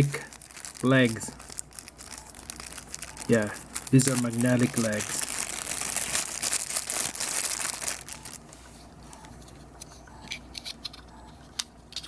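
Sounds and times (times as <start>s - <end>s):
packaging crinkling and rustling: 0.0s - 9.6s.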